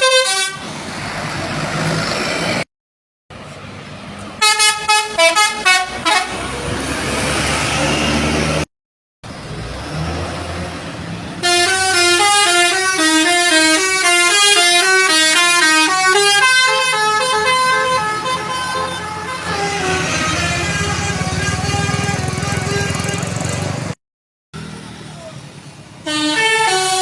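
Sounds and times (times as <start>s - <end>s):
bus musical horn melody: 0.0s - 0.6s, 4.4s - 6.6s, 11.4s - 23.8s, 26.0s - 27.0s
bus engine rumble: 0.0s - 2.7s, 3.3s - 24.0s, 24.6s - 27.0s.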